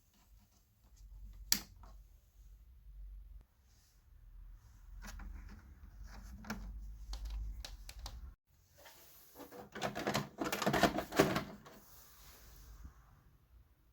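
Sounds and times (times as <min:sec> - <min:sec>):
typewriter clicking and rattling: 0:09.7 - 0:11.6.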